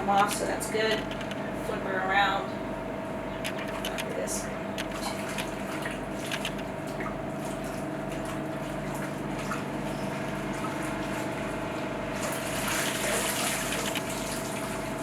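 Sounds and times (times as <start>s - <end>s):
steady machine hum: 0.0s - 15.0s
water sloshing and splashing: 3.5s - 15.0s.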